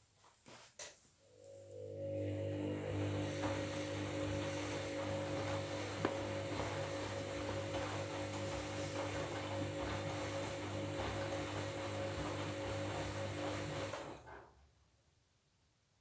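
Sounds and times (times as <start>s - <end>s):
washing machine motor whine: 1.2s - 14.5s
water and laundry sloshing: 2.4s - 14.2s.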